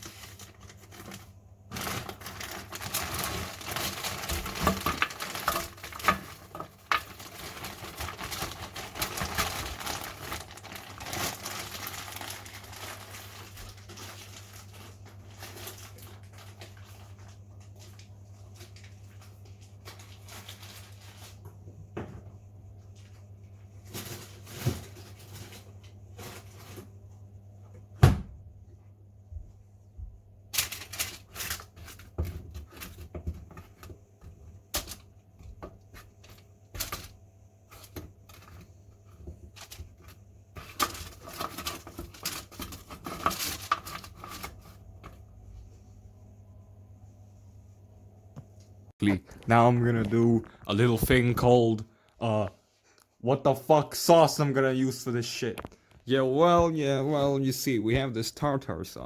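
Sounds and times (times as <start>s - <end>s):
kitchen rustling and clattering: 0.0s - 27.2s, 30.5s - 46.0s.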